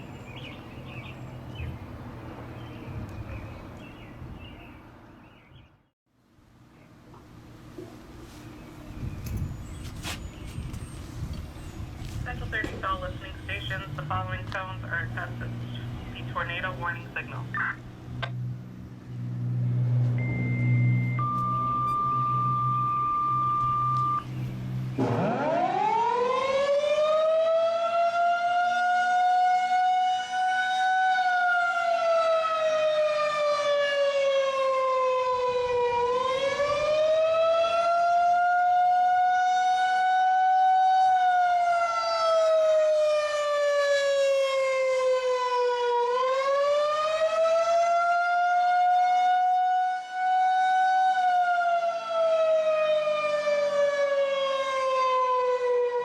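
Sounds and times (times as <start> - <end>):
warning siren wailing: 12.3 - 56.0.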